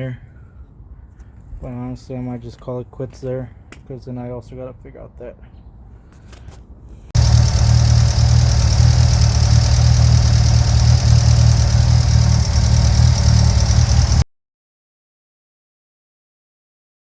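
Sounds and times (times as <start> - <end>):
car engine idling: 7.2 - 14.2.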